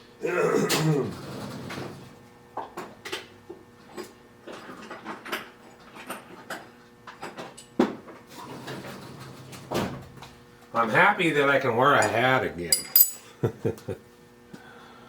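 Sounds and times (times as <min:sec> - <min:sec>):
metal tooling clinks and knocks: 0:12.0 - 0:13.3.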